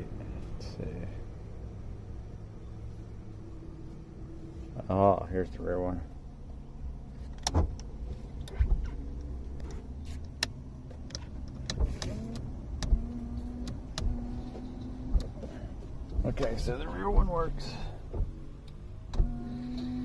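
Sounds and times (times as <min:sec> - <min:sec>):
wiper motor hum: 0:00.0 - 0:20.0.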